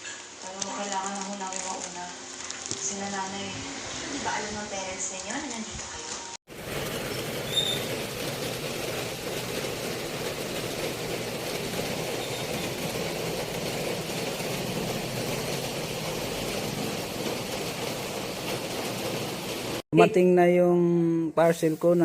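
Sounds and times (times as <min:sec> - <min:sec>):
steady mechanical running noise: 0:06.5 - 0:19.8.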